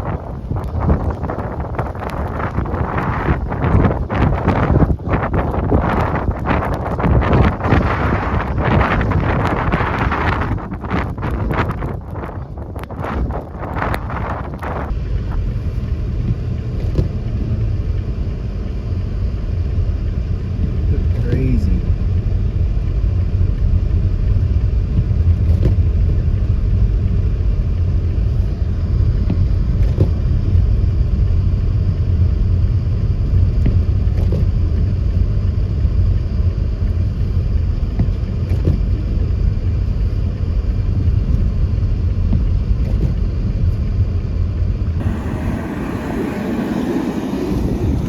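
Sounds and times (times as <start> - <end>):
car driving rumble: 0.0 - 48.0
wind noise on microphone: 0.0 - 48.0.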